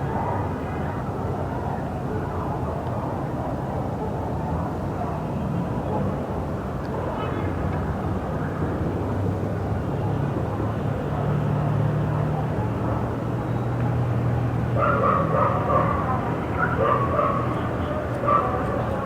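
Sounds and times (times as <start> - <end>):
steady low city hum: 0.0 - 19.0
dog barking: 14.8 - 19.0.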